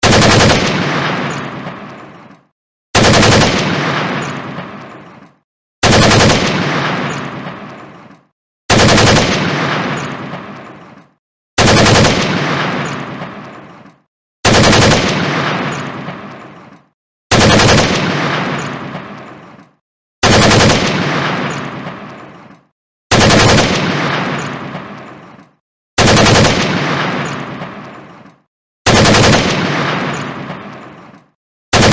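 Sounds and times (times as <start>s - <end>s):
assault rifle firing automatic bursts: 0.0s - 2.1s, 3.0s - 5.0s, 5.8s - 7.9s, 8.7s - 10.7s, 11.6s - 13.7s, 14.4s - 16.4s, 17.3s - 19.4s, 20.2s - 22.2s, 23.1s - 25.2s, 26.0s - 28.0s, 28.9s - 31.0s.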